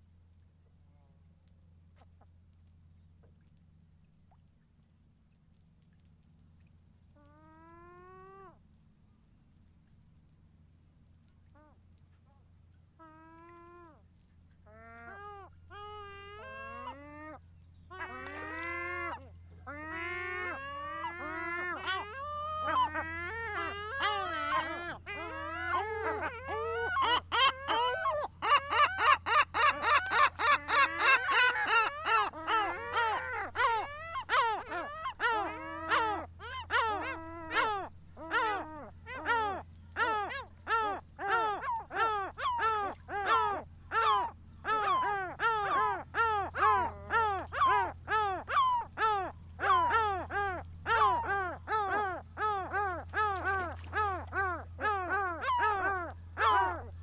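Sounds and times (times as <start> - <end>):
steady low hum: 0.0 - 57.0
gulls calling: 14.7 - 57.0.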